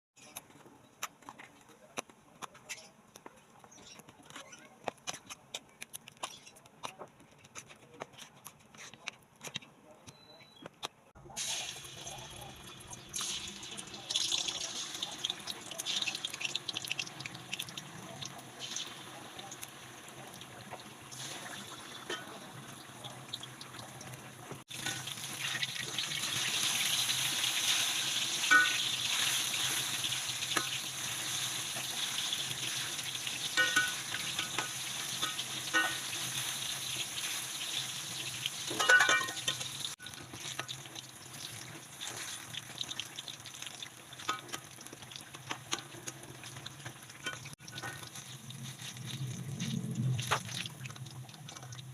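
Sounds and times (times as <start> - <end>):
slices frying in hot oil: 11.2 - 51.9
utensil clinking against pan: 33.6 - 36.0, 38.7 - 39.7.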